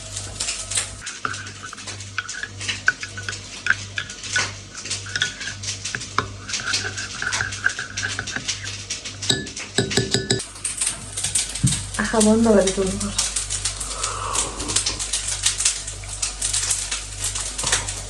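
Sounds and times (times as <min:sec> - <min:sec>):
metal spoon scraping a dish: 0:01.0 - 0:10.4.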